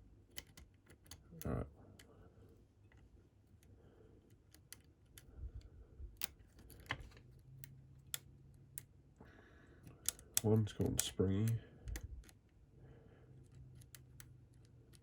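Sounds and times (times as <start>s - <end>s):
lock pick clicking in lock: 0.3s - 2.1s, 9.9s - 12.4s, 13.4s - 15.0s.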